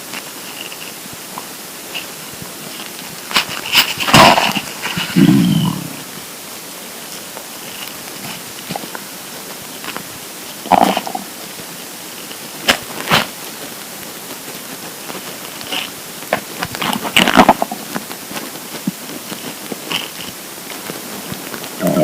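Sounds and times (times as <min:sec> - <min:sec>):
steady hiss: 0:00.0 - 0:22.0
stomach gurgling: 0:00.2 - 0:06.2, 0:07.2 - 0:11.6, 0:15.4 - 0:20.4, 0:21.0 - 0:22.0.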